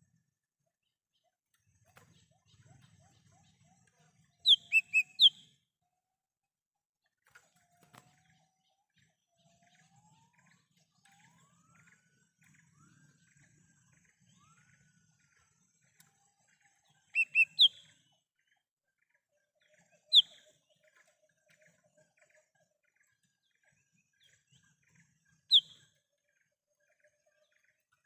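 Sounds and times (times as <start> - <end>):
bird calling: 4.4 - 5.4, 17.2 - 17.8
faint rising bird whistles: 4.4 - 5.5, 17.1 - 18.0, 25.5 - 26.0.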